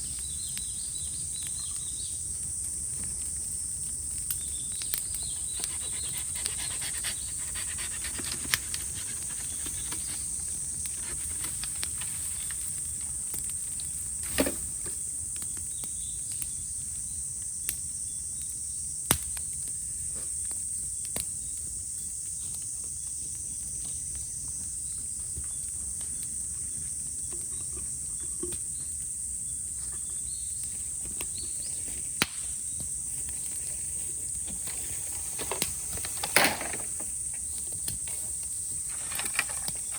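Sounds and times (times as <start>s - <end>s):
fire popping and crackling: 0.0s - 16.9s, 30.4s - 33.6s, 34.2s - 39.9s
cicadas buzzing: 0.0s - 39.9s.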